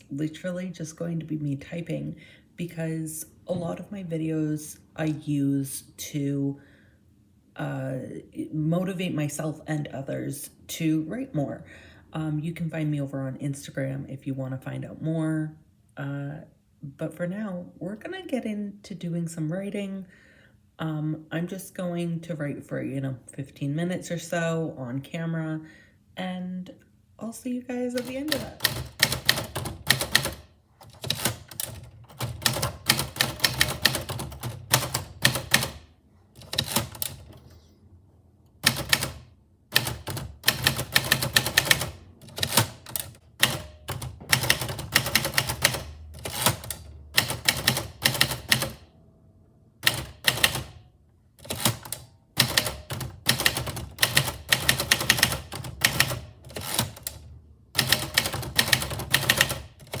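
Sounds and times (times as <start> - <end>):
typewriter key strikes: 28.0 - 35.8.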